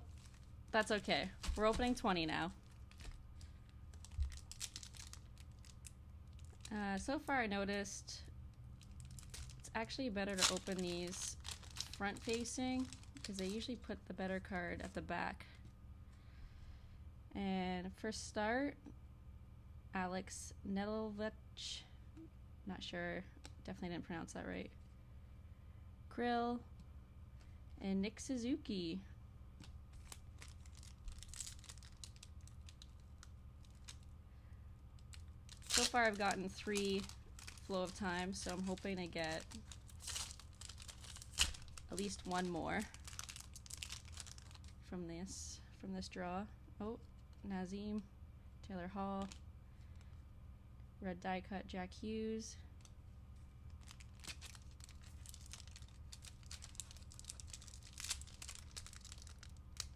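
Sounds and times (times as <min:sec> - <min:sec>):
card wrapper crinkling: 0:00.0 - 0:07.1, 0:08.8 - 0:13.8, 0:29.6 - 0:34.1, 0:35.0 - 0:44.8, 0:53.7 - 0:59.9.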